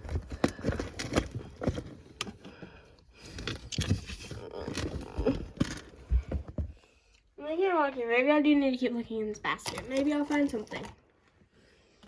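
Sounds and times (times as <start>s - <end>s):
plastic toys rummaged in basket: 0.0s - 6.7s.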